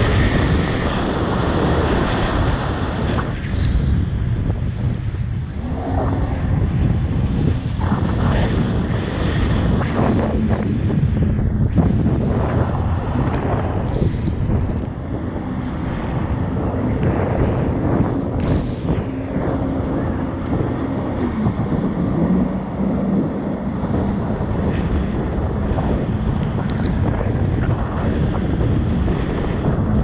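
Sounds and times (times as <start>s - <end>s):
jet ski engine running: 0.0s - 30.0s
wind buffeting microphone: 0.0s - 30.0s
water rushing past: 14.0s - 26.6s.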